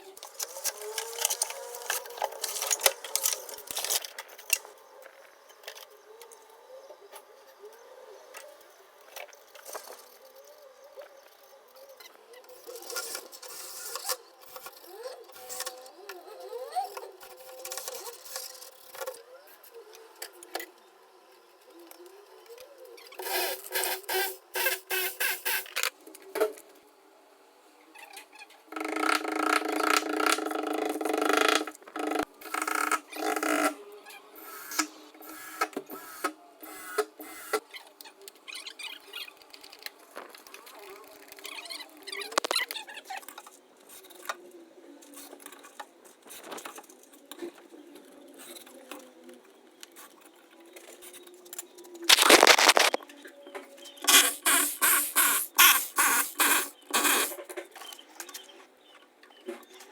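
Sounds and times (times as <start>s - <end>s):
tools clicking and scraping: 0.2s - 4.7s, 42.3s - 42.7s, 52.1s - 53.0s, 54.0s - 58.0s.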